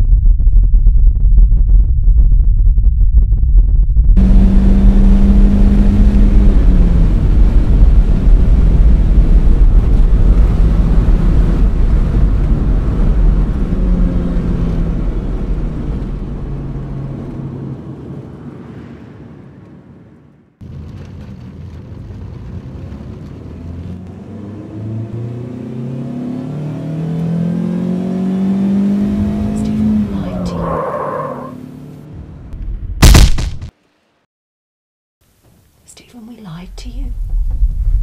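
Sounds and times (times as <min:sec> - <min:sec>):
deep loud rumble: 0:00.0 - 0:24.2, 0:36.8 - 0:38.0.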